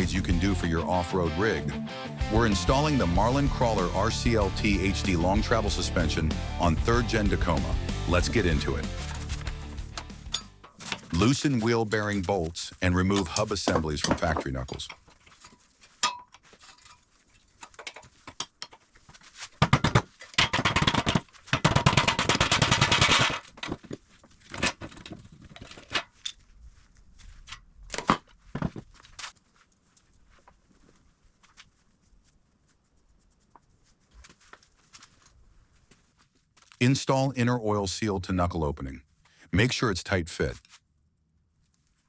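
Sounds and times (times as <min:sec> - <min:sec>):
impact wrench rattling: 0:09.1 - 0:10.8
metal clanks of tools: 0:10.0 - 0:11.1, 0:16.0 - 0:16.4.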